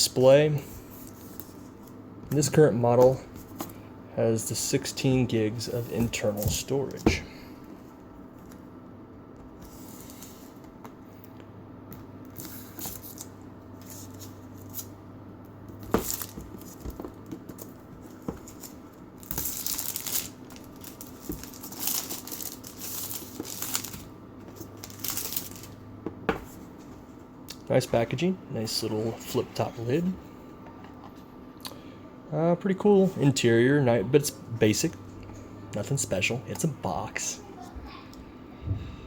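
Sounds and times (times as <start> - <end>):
plastic wrapping tearing: 18.6 - 24.1.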